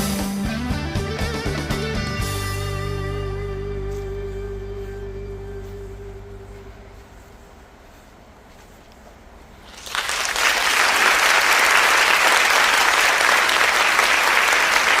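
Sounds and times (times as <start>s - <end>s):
applause: 9.7s - 15.0s.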